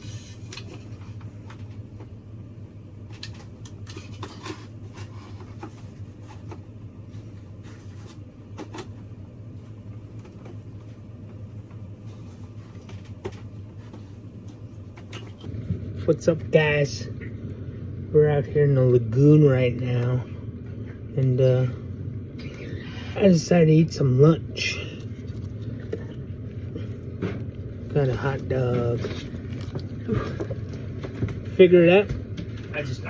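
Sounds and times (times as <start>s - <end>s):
low mechanical hum: 0.0s - 33.0s.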